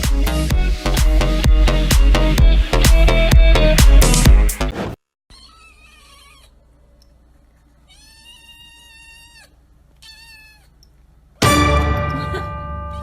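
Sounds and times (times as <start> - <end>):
cat meowing: 5.3 - 6.6, 7.8 - 10.8
music with ringing note: 11.4 - 13.0.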